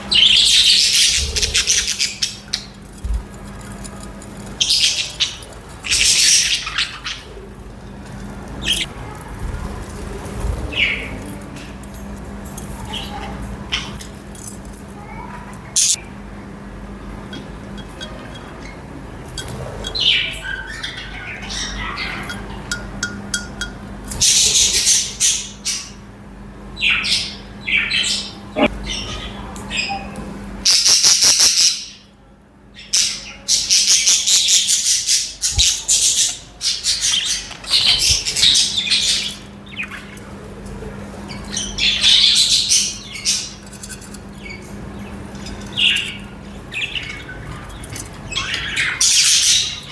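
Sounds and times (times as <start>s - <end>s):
budgerigars chattering and squawking: 0.0s - 2.8s, 4.4s - 7.4s, 8.5s - 8.9s, 15.7s - 16.0s, 30.7s - 32.0s, 44.3s - 49.9s
low steady hum: 0.0s - 27.0s.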